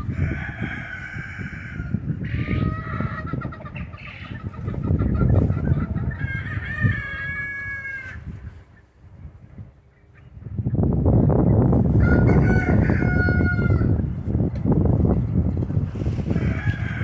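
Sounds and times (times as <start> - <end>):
chickens squawking: 0.0 - 9.0, 11.4 - 14.2, 16.0 - 17.0.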